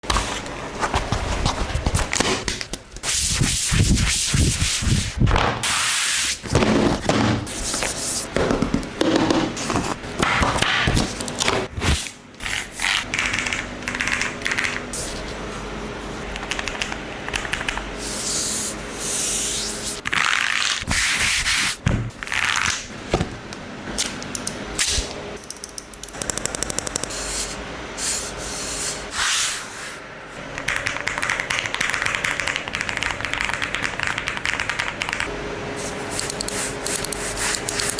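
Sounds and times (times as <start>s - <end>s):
mechanical keyboard typing: 13.1s - 14.8s, 16.3s - 17.8s, 25.5s - 27.2s, 30.6s - 35.3s.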